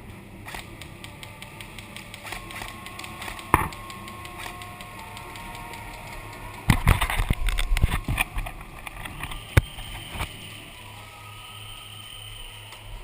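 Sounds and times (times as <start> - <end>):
rapid sharp knocks and clicks: 0.5 - 7.4.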